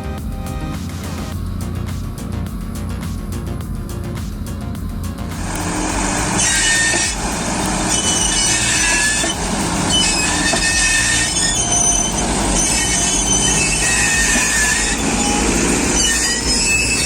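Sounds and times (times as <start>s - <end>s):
heavy machinery rumbling: 0.9s - 17.0s
high-pitched metallic squeals: 5.3s - 17.0s.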